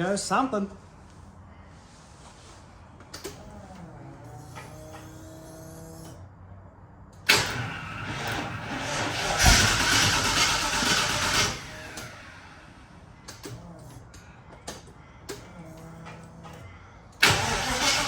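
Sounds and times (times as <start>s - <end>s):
engine cranking on starter: 3.2s - 6.2s, 7.2s - 14.1s, 14.7s - 18.0s.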